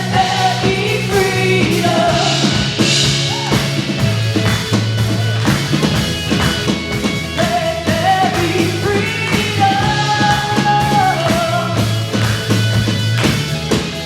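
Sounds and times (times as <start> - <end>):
person singing: 0.0 - 3.6, 7.4 - 11.9
drum kit: 0.0 - 14.0
rock band playing: 0.0 - 14.0.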